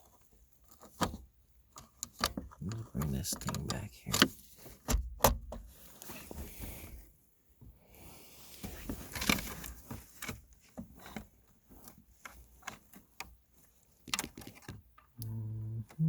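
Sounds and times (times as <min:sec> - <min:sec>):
car shifter parts clicking and knocking: 0:00.7 - 0:05.6.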